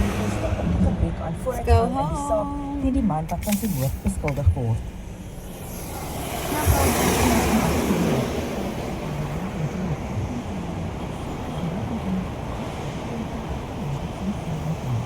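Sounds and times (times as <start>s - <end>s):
car road and engine rumble: 0.0s - 15.0s
loud rushing swell: 4.9s - 9.5s.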